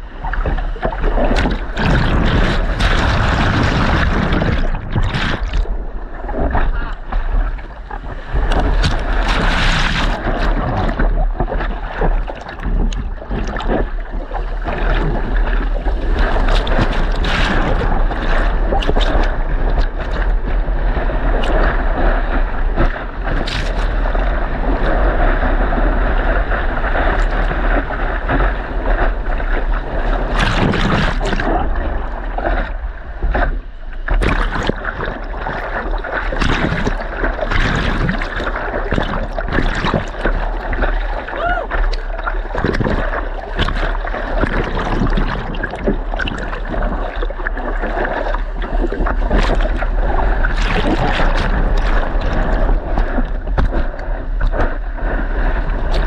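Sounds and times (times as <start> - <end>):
short water splashes: 0.0 - 25.6, 26.4 - 56.0
wind buffeting microphone: 0.0 - 56.0.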